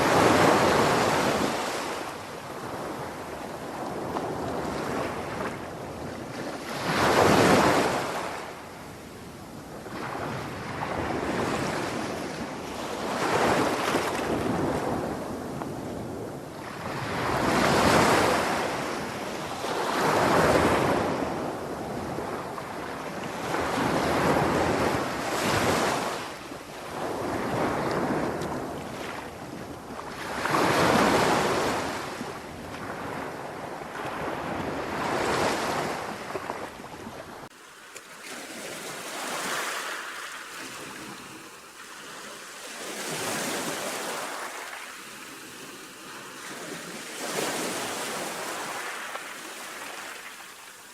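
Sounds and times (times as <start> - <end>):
sea waves breaking: 23.5 - 50.9.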